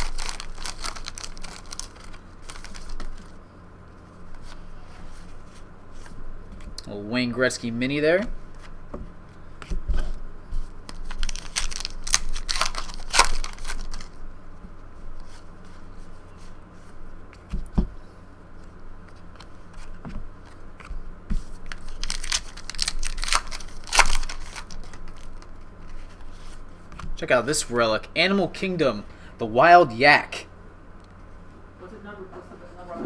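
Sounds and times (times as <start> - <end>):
wrappers torn open and crinkled: 0.0 - 3.3, 11.0 - 14.2, 21.7 - 25.5
cards rustling: 0.0 - 3.4, 9.4 - 14.2, 18.6 - 27.8.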